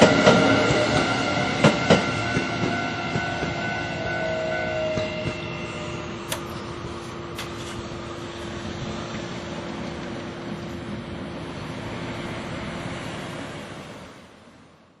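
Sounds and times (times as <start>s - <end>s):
train wheels rushing on rail: 0.0s - 14.8s
sharp clicks: 6.3s - 6.5s.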